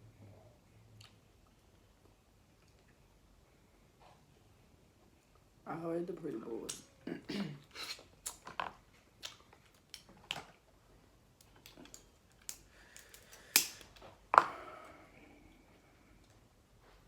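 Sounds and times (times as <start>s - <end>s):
crab shells cracking: 9.2s - 10.5s, 11.4s - 14.0s.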